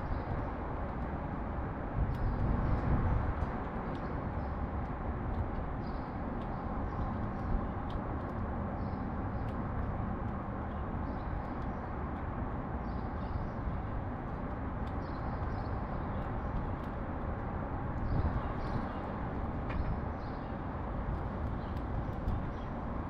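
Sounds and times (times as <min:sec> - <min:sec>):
city traffic rumble: 0:00.0 - 0:23.0.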